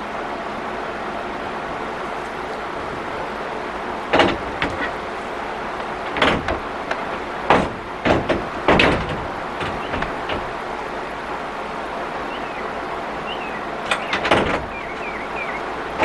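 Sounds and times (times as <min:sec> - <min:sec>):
steel tray clanking and sliding: 0:03.8 - 0:11.1, 0:13.8 - 0:16.0.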